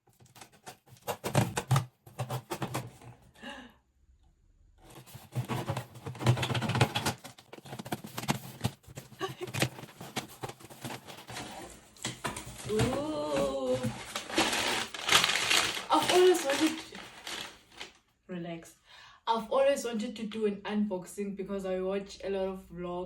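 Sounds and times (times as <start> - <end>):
cardboard and tape tearing: 0.0 - 3.1, 4.8 - 18.0.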